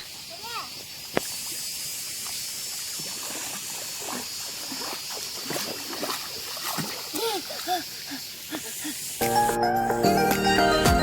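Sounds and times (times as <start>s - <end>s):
steady high hiss: 0.0s - 3.0s, 7.0s - 11.0s
water of a stream: 0.0s - 9.3s.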